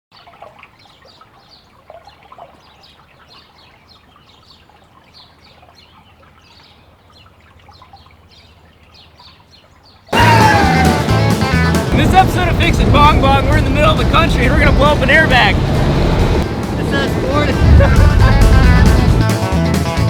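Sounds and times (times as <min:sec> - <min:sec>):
birds chirping: 0:00.2 - 0:19.3
loud music: 0:10.2 - 0:20.0.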